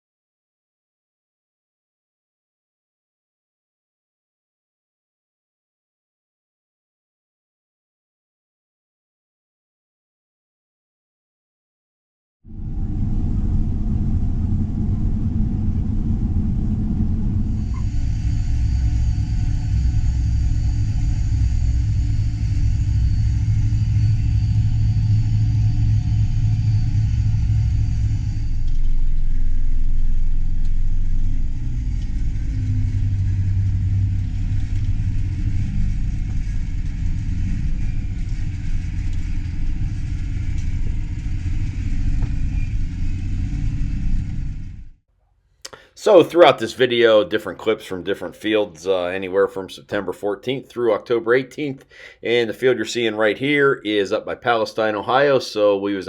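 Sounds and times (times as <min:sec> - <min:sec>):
machinery engines rumbling: 0:12.5 - 0:45.0.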